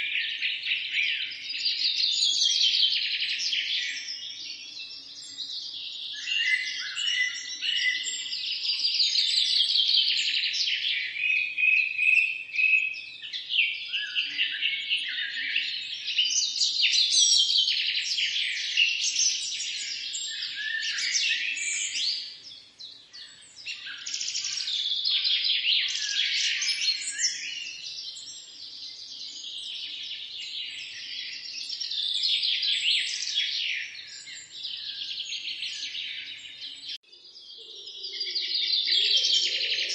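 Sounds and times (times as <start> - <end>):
birds chirping and singing: 0.0 - 39.9.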